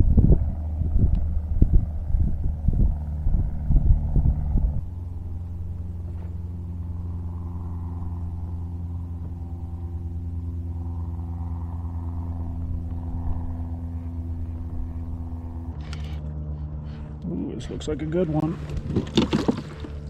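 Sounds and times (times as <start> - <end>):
motor humming: 0.0 - 20.0
handling noise: 18.6 - 20.0.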